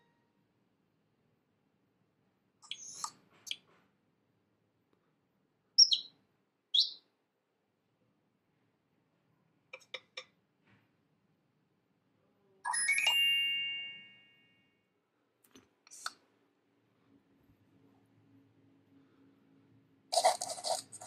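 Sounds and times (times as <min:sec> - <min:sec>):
bell-like phone chime: 0:12.7 - 0:14.8.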